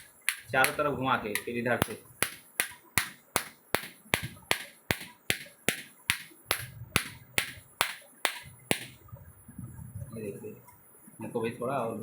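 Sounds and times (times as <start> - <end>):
hammer tapping copper winding: 0.0 - 0.8, 1.4 - 9.0.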